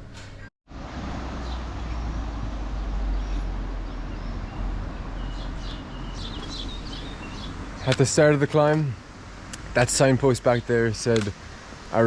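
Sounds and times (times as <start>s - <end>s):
wind buffeting microphone: 3.0s - 8.8s.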